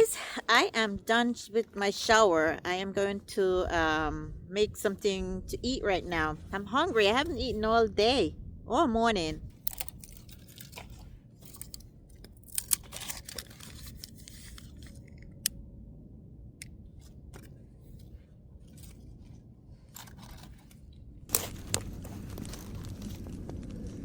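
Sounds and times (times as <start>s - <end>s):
steady low rumble: 0.0s - 24.0s
clicks and rustles of handling: 9.5s - 15.6s, 17.0s - 23.9s.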